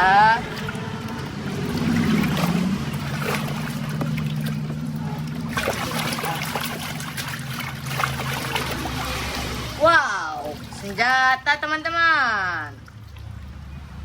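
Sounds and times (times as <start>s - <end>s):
steady low hum: 0.0s - 11.5s
water trickling and splashing: 0.0s - 14.0s.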